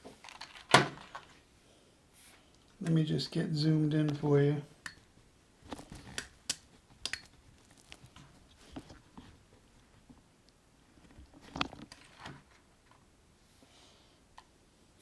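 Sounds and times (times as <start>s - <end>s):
hands handling camcorder clicks: 5.7s - 7.3s.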